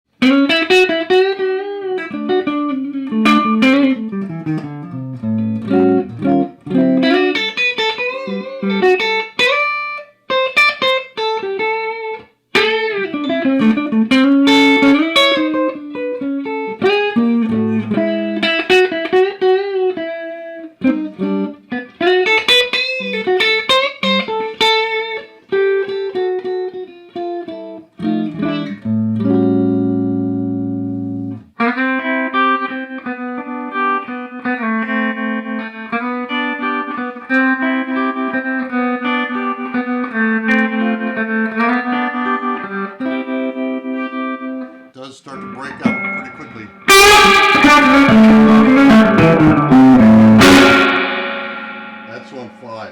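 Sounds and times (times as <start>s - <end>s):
clean electric guitar: 0.1s - 52.9s.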